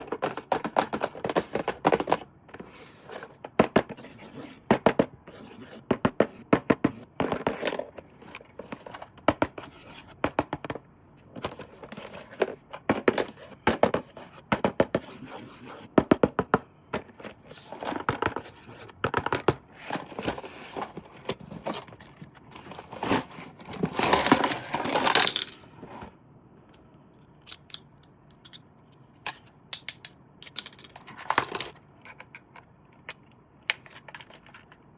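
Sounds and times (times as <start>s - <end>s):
packaging rustling and scraping: 0.0s - 4.7s, 11.4s - 15.8s, 17.0s - 26.2s.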